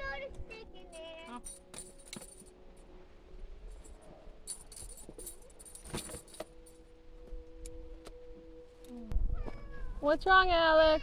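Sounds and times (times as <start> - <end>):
faint steady hum: 0.0 - 11.0
metallic jingling: 0.9 - 2.6, 3.8 - 6.8.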